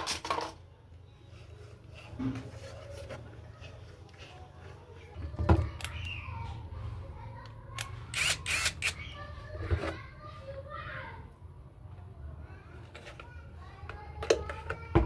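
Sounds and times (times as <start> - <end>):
sharp clicks and scrapes: 7.7 - 9.0.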